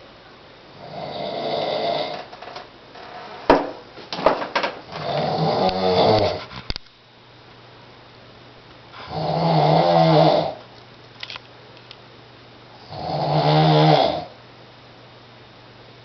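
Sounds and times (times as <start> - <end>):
man snoring: 0.8 - 2.3, 4.9 - 6.4, 9.0 - 10.6, 12.8 - 14.3.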